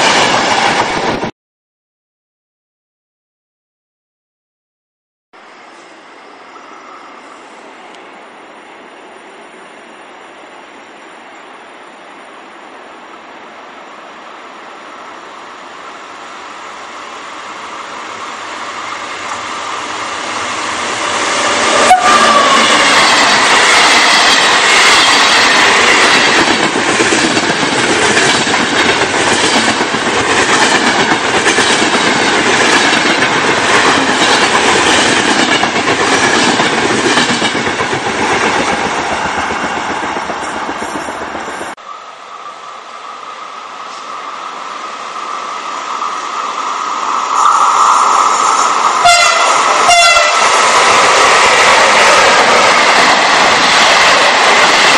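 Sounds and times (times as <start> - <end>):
train passing at speed: 0.0 - 1.3, 5.4 - 54.9
train wheels clattering on rails: 20.4 - 41.8, 47.3 - 54.9.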